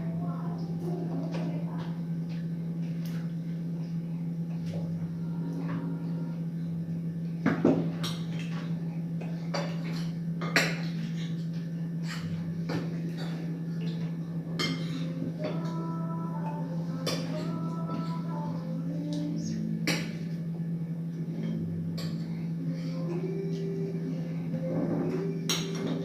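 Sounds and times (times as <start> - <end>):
steady low hum: 0.0 - 26.0
cutlery clinking on plates: 14.6 - 15.2, 25.0 - 26.0.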